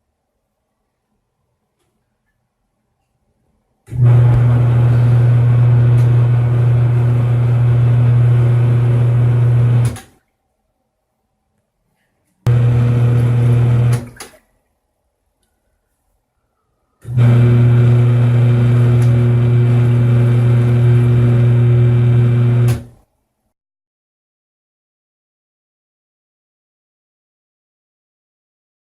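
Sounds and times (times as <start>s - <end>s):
washing machine motor humming: 3.9s - 10.1s, 12.5s - 14.4s, 17.0s - 23.0s.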